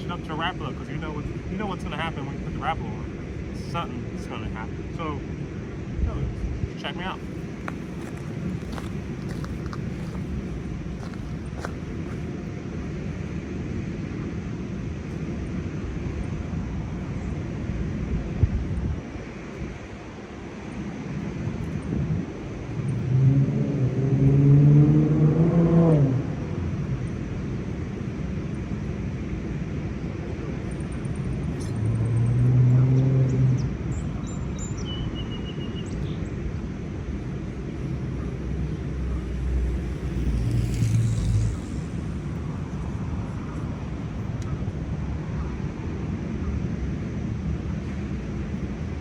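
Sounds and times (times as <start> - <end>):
vehicles passing: 0.0 - 49.0.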